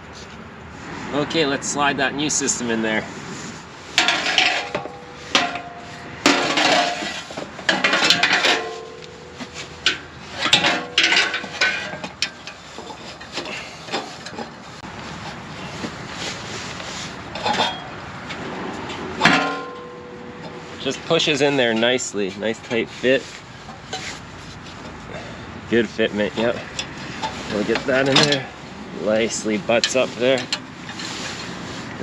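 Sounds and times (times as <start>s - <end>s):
metal clanks and scraping: 2.2s - 32.0s.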